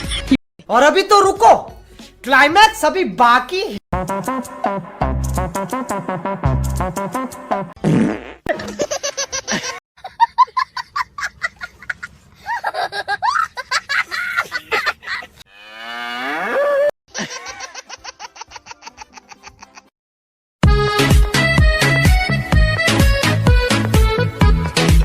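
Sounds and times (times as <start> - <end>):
comic fart noises: 7.8 - 8.7.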